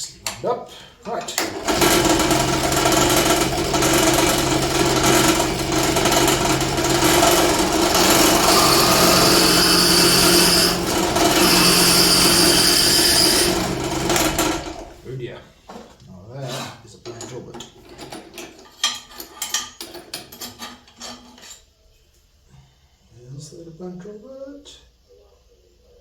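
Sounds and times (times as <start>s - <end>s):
drill press motor hum: 1.4s - 15.0s
high-pitched drill bit squeal: 8.2s - 13.5s.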